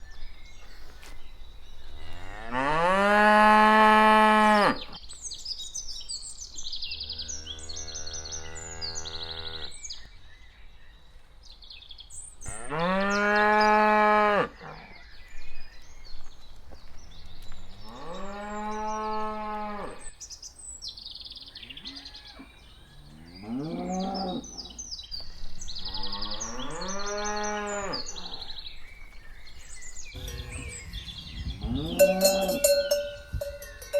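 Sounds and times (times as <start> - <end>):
cattle mooing: 30.2 - 33.9.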